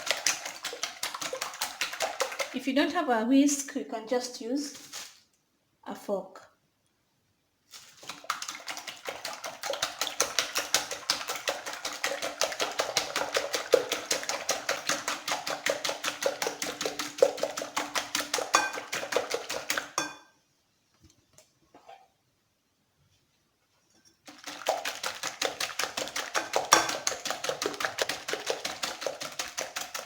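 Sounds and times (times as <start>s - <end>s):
wire whisk beating eggs in bowl: 0.0s - 2.6s, 7.9s - 20.2s, 24.2s - 30.0s.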